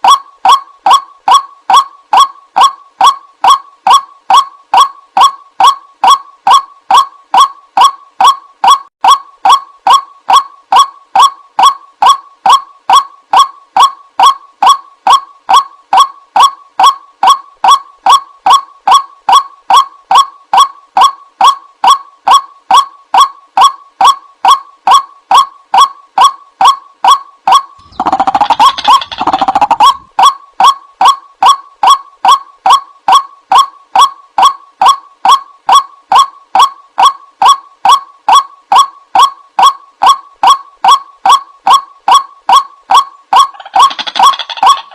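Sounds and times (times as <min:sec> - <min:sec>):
bird call repeated short notes: 0:00.0 - 0:44.9
harsh bird calls: 0:27.8 - 0:30.1.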